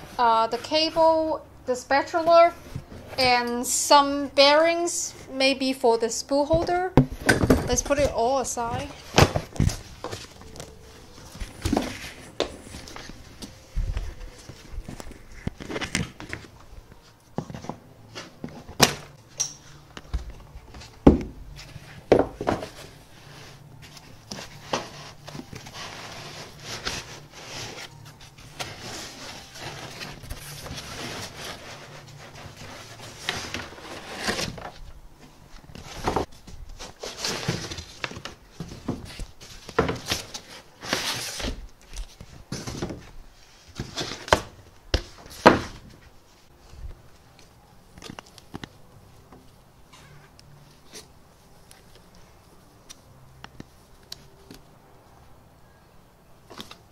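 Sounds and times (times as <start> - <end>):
packaging rustling and scraping: 7.2 - 48.8.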